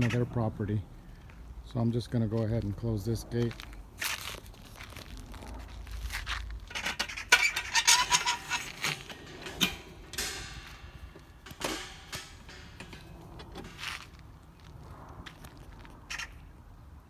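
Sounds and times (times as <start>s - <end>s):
metal gate knocks and scrapes: 6.7s - 14.9s
ringing metal clinks: 7.9s - 14.1s.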